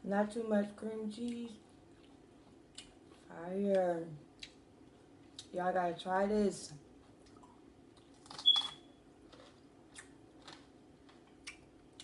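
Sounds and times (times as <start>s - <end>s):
faint crunching chews: 1.3s - 3.3s, 6.8s - 12.0s.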